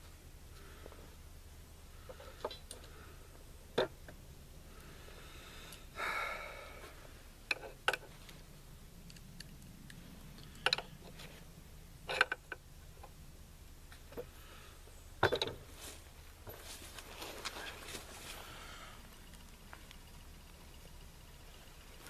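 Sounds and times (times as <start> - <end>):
sharp metal clicks and knocks: 9.0 - 11.2, 12.0 - 13.2.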